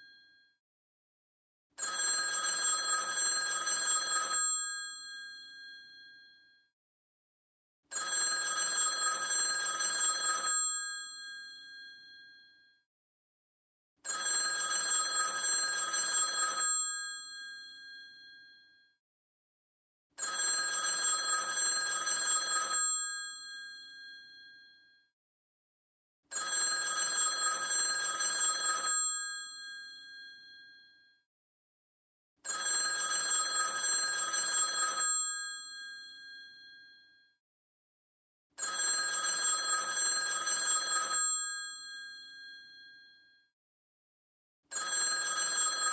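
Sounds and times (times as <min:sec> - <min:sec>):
telephone bell ringing: 0:01.8 - 0:06.4, 0:07.9 - 0:12.6, 0:14.0 - 0:18.8, 0:20.2 - 0:24.9, 0:26.3 - 0:31.0, 0:32.4 - 0:37.2, 0:38.6 - 0:43.2, 0:44.7 - 0:45.9.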